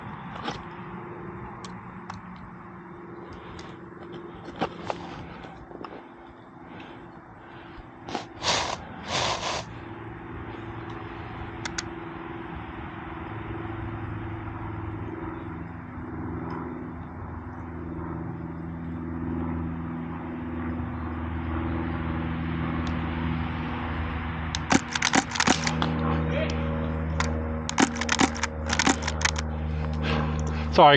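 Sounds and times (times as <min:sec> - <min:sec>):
low mechanical hum: 0:00.0 - 0:30.9
short noisy bursts: 0:08.1 - 0:09.8, 0:24.6 - 0:25.8, 0:27.2 - 0:30.6
sharp airsoft shots: 0:24.6 - 0:25.8, 0:27.2 - 0:29.4.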